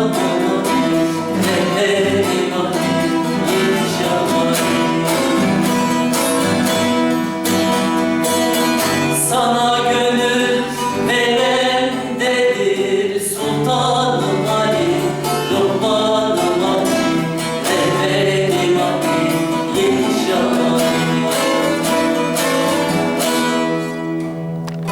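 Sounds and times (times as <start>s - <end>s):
person singing: 0.0s - 5.8s, 8.8s - 22.6s
guitar strummed: 0.0s - 24.9s
plucked lute: 0.0s - 24.9s.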